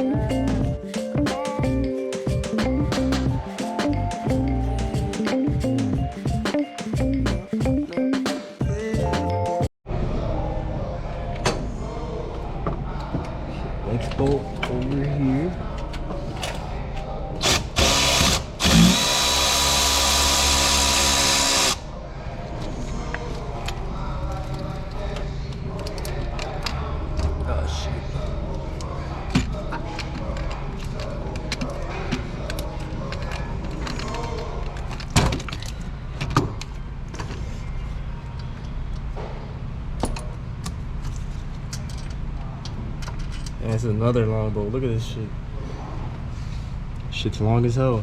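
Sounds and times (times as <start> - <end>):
power tool running: 17.4 - 21.8.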